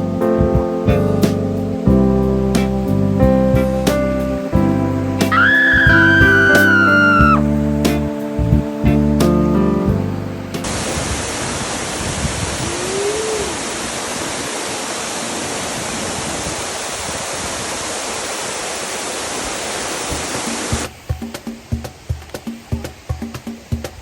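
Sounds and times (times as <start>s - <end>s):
background music: 0.0s - 10.8s
waterfall rushing: 1.3s - 23.8s.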